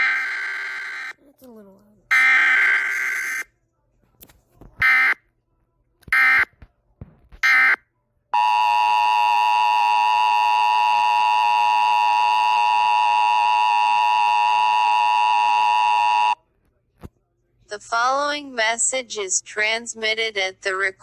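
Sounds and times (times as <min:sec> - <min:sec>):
two-tone alarm: 0:02.1 - 0:03.5, 0:04.8 - 0:05.2, 0:06.1 - 0:06.5, 0:07.4 - 0:07.8, 0:08.4 - 0:16.4.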